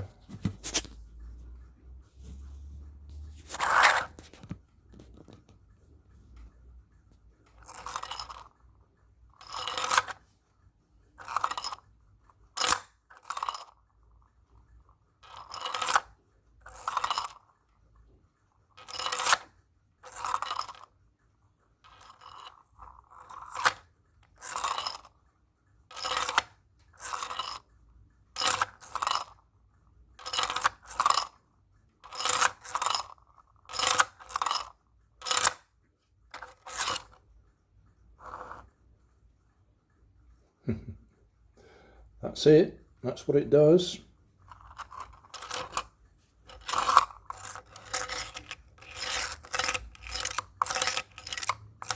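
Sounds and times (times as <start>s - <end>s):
plastic fidget toy scraping clatter: 0.0s - 1.1s, 3.1s - 5.6s, 7.5s - 8.6s, 9.3s - 10.4s, 18.7s - 20.9s, 21.8s - 25.1s, 25.9s - 27.7s, 28.4s - 29.4s, 32.0s - 35.7s, 36.3s - 37.2s, 38.2s - 38.8s, 44.4s - 51.9s.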